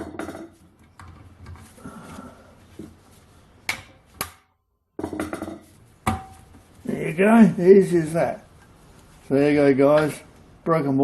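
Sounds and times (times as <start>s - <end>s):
handling and shuffling: 0.6s - 4.2s, 5.4s - 10.6s.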